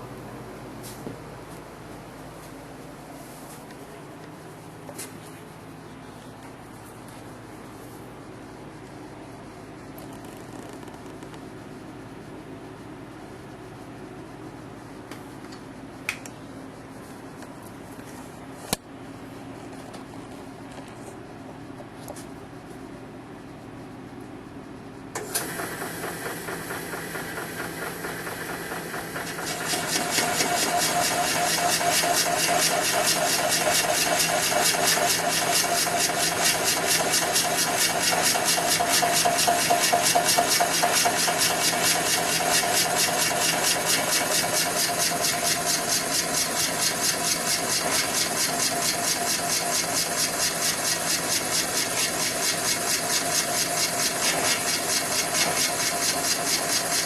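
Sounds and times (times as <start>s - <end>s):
car engine cranking and running: 25.2s - 57.0s.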